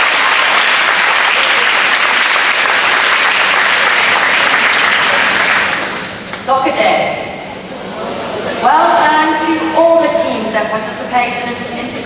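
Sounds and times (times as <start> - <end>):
audience applauding: 0.0 - 6.4.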